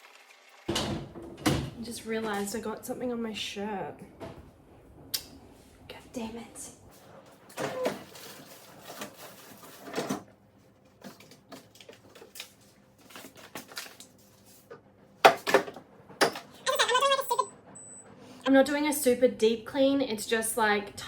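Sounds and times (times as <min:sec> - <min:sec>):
food containers clattering: 0:07.5 - 0:10.3, 0:10.9 - 0:16.6.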